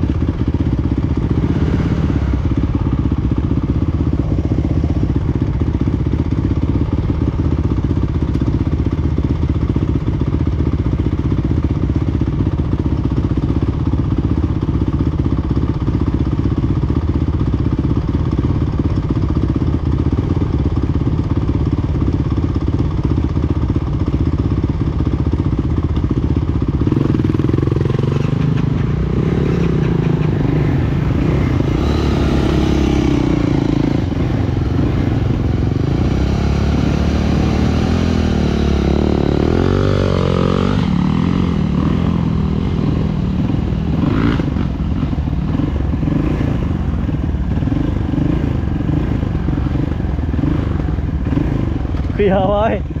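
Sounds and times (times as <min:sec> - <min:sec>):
single-cylinder engine running: 0:00.0 - 0:53.0.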